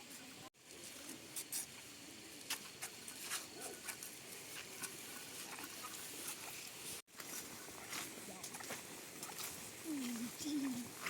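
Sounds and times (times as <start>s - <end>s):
steady background hiss: 0.0s - 11.0s
light ticks and patter: 2.4s - 11.0s.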